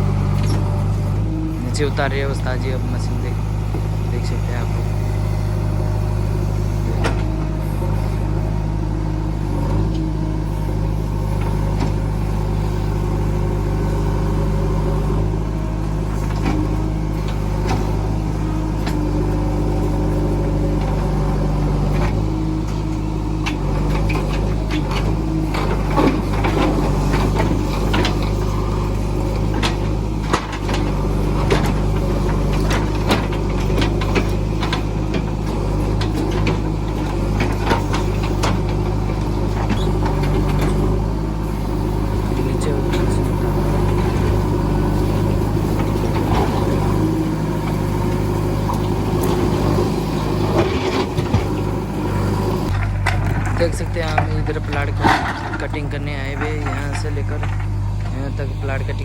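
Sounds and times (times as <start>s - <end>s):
diesel engine running: 0.0s - 59.0s
knocks and clatters: 22.0s - 41.0s, 48.6s - 59.0s.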